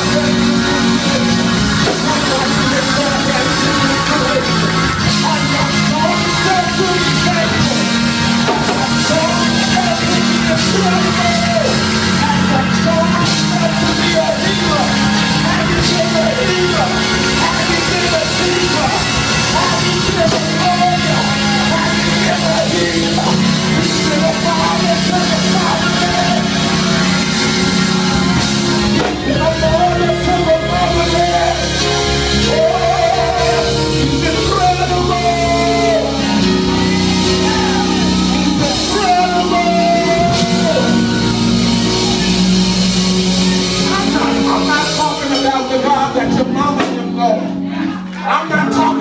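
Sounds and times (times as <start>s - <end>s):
sustained instrumental chords: 0.0s - 49.0s
person singing long notes: 14.6s - 45.4s.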